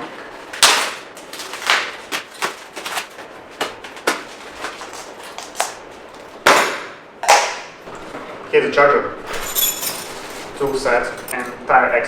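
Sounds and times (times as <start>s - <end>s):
packaging clicks and rustles: 0.6s - 6.3s.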